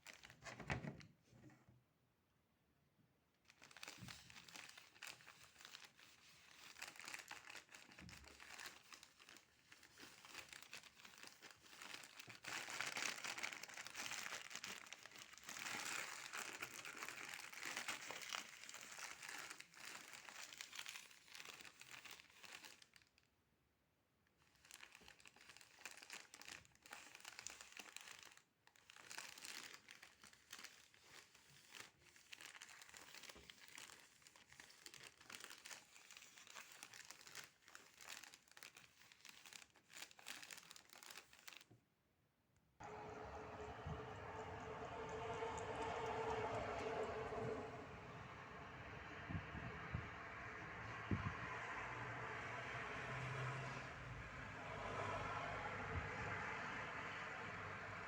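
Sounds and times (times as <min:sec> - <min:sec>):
crinkling and crackling: 0:00.0 - 0:01.7, 0:03.4 - 0:23.3, 0:24.3 - 0:41.8.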